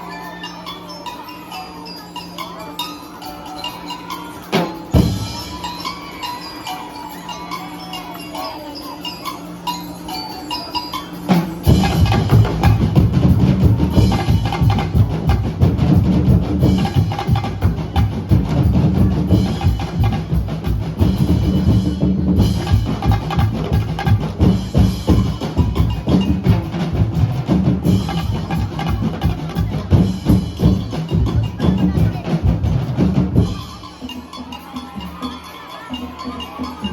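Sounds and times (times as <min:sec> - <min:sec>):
loud fast drumming: 0:04.5 - 0:06.2, 0:11.3 - 0:36.9.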